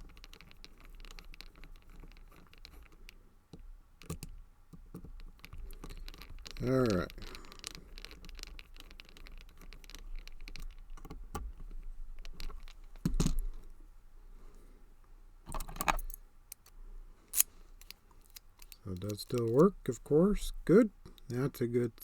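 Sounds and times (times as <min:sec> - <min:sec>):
padlock and key clicking: 0:15.5 - 0:16.8, 0:17.4 - 0:19.7.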